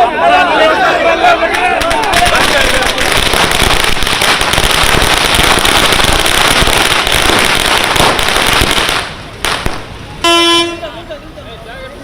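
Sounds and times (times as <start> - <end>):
firecrackers crackling: 1.4 - 10.8.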